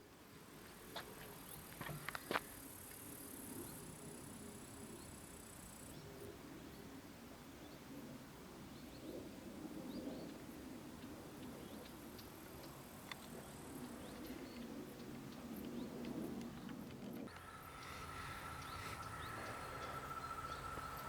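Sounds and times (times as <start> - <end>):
faint bird chirps: 17.3 - 21.0
low rumble: 17.3 - 21.0
steady high tone: 17.3 - 21.0.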